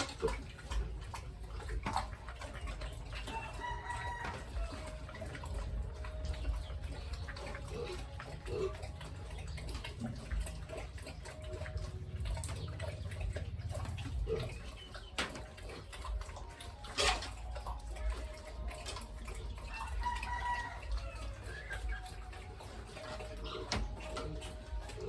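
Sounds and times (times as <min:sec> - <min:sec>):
farm animal calls: 0:00.0 - 0:25.0
water splashing and dripping: 0:00.0 - 0:25.0.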